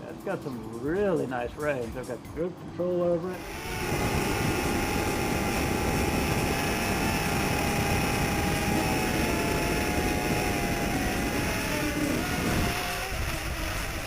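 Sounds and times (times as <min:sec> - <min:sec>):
low rumbling noise: 0:03.4 - 0:14.0
small drone rotors whining: 0:03.4 - 0:14.0.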